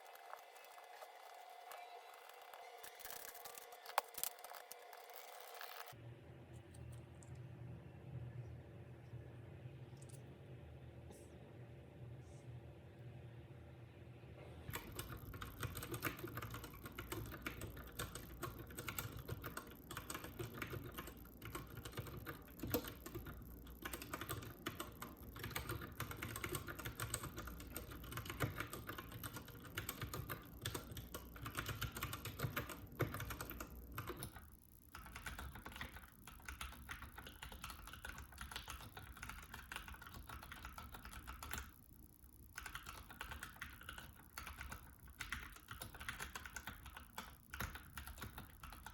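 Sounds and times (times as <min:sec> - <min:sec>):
fast mechanical keyboard typing: 0:00.0 - 0:06.0, 0:14.7 - 0:48.9.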